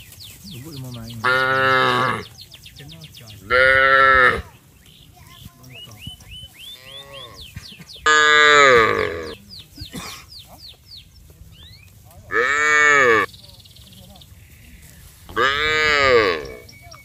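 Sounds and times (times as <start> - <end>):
cattle mooing: 1.2 - 2.3, 3.5 - 4.5, 6.7 - 7.5, 8.1 - 9.4, 12.3 - 13.3, 15.3 - 16.7.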